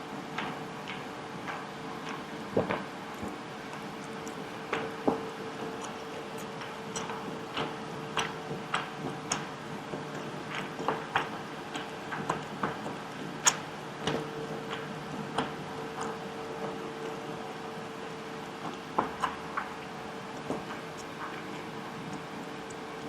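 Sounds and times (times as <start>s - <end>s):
fan humming: 3.0s - 23.0s
close chewing clicks: 5.6s - 9.5s, 10.1s - 17.7s, 18.4s - 23.0s.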